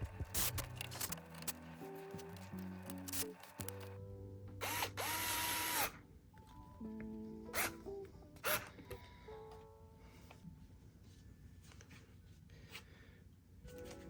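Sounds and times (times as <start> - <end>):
electric screwdriver whirring: 0.0 - 3.9, 4.6 - 5.9
background music: 0.0 - 10.8.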